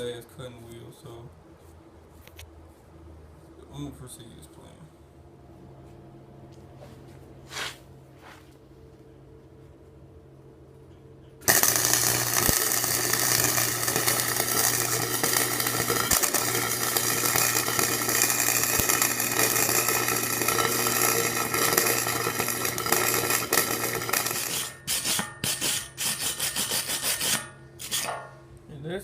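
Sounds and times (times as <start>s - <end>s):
welding arc crackling: 11.4s - 28.4s.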